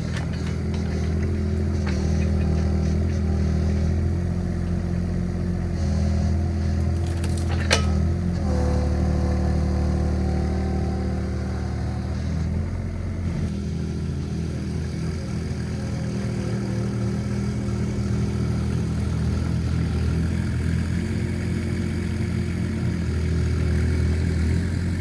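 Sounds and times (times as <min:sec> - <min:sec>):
excavator engine running: 0:00.0 - 0:25.0
sharp metal clank: 0:07.2 - 0:08.2.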